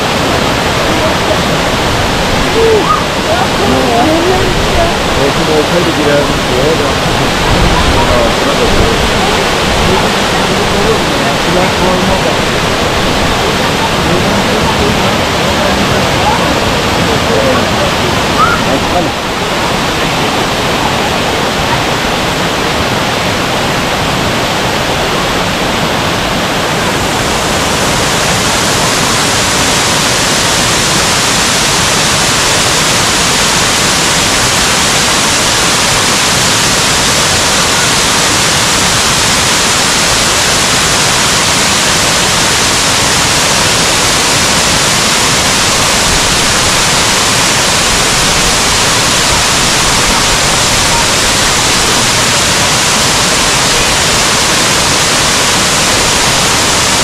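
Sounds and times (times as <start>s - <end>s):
waterfall rushing: 0.0s - 57.0s.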